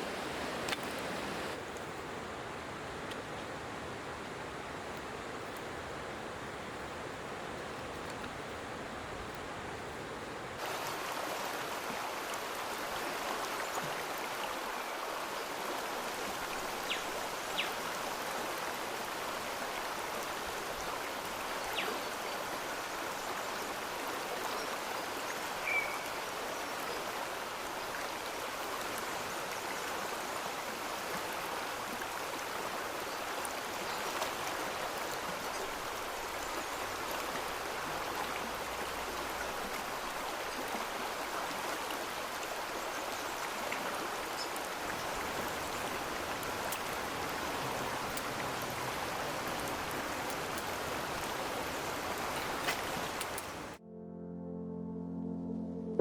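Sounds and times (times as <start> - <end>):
stream water running: 0.0 - 53.8
faint clicks: 0.6 - 1.9, 7.6 - 8.6, 44.8 - 53.8.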